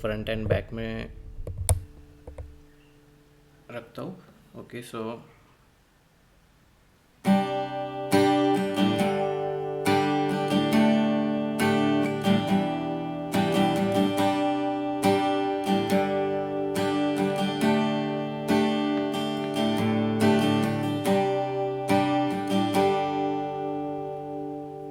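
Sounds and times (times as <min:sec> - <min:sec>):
guitar strummed: 0:07.2 - 0:24.9.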